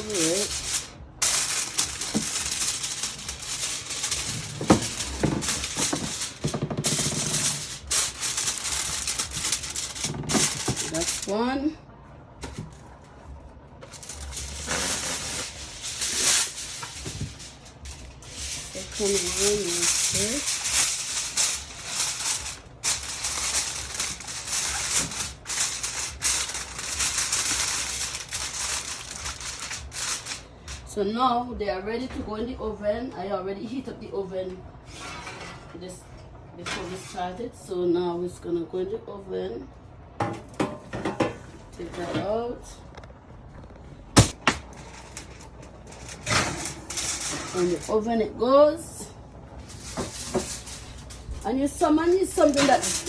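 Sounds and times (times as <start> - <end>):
aluminium foil crinkling: 0.0 - 11.6, 13.8 - 31.0, 43.7 - 48.2, 49.5 - 53.0.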